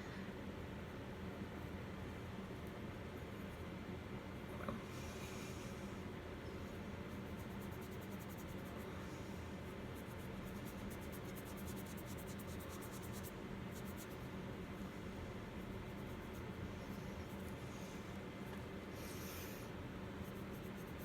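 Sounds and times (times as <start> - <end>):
steady low hum: 0.0 - 21.0
light scratching strokes: 7.1 - 8.8, 9.6 - 14.3.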